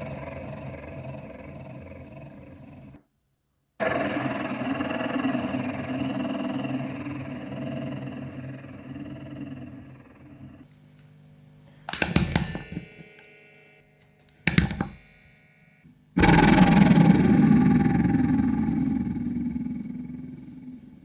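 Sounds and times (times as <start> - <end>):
faint ringing: 11.0 - 16.2.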